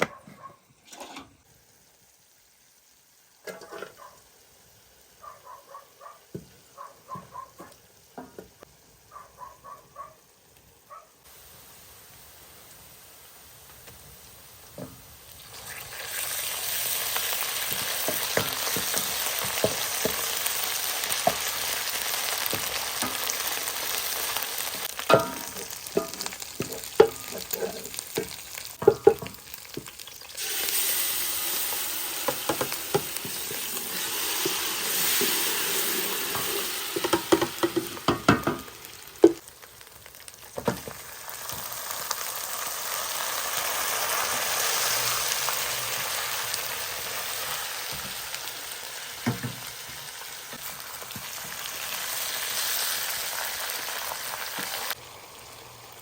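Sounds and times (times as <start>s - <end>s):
food sizzling in hot oil: 0.8s - 5.3s, 6.0s - 56.0s
utensil clanking against pot: 25.1s - 29.4s.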